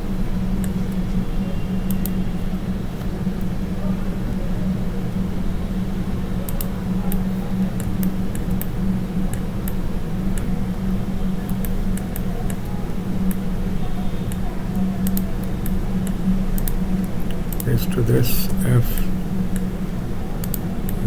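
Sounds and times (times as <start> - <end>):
low electrical hum: 12.3 - 21.0.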